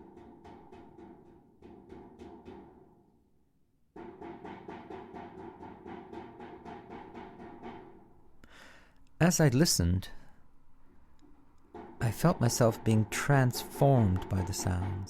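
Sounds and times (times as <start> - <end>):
rapid even tapping: 11.1 - 15.0.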